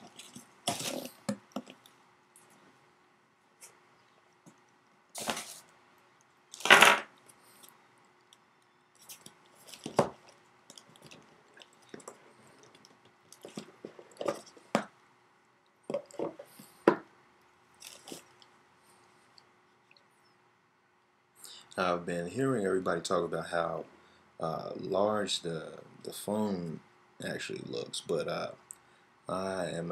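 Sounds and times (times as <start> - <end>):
packaging rustling and crinkling: 0.0 - 1.9, 5.2 - 5.7, 9.0 - 14.6, 17.8 - 18.5.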